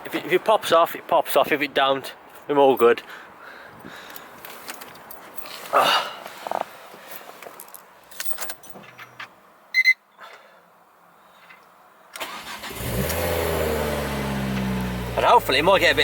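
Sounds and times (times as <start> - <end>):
short electronic beep: 9.7 - 10.0
car engine cranking and idling: 12.2 - 16.0.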